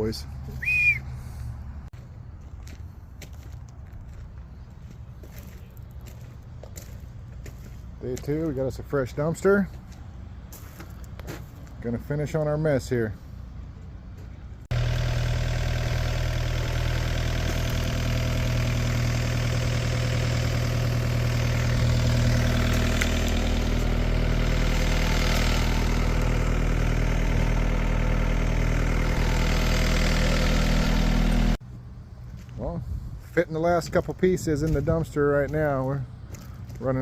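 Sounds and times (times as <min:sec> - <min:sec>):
excavator diesel engine: 0:00.0 - 0:10.4, 0:13.5 - 0:32.3.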